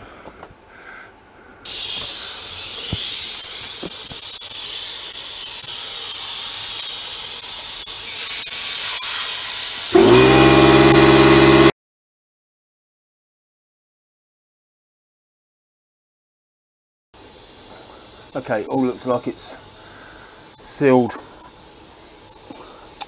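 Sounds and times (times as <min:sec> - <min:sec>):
compressed air hissing: 0:01.6 - 0:11.7, 0:17.2 - 0:23.0
air compressor motor humming: 0:01.7 - 0:11.7.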